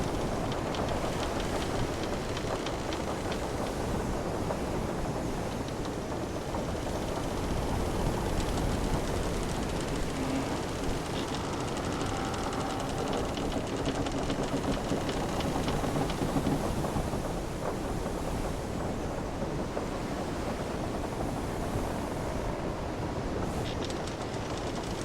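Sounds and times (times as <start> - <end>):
wind: 0.0 - 25.0
wooden ship timbers creaking: 7.5 - 16.6, 23.4 - 25.0
small ticks: 8.2 - 16.6, 23.5 - 25.0.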